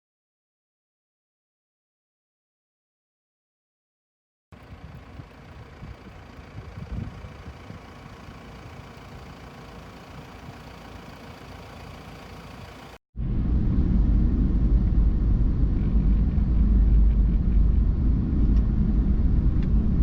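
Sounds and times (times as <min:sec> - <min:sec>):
vehicle engine rumbling: 0:04.6 - 0:20.0.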